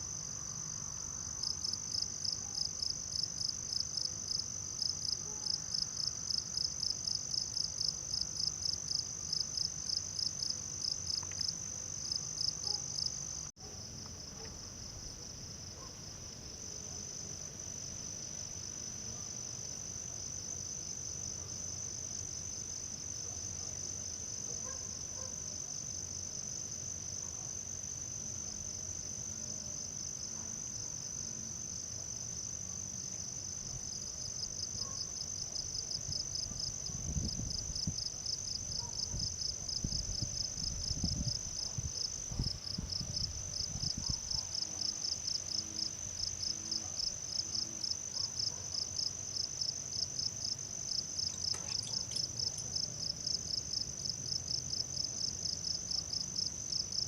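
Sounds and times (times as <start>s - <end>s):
rapidly pulsing insect trill: 25.2s - 57.0s
crickets trilling drone: 25.7s - 57.0s.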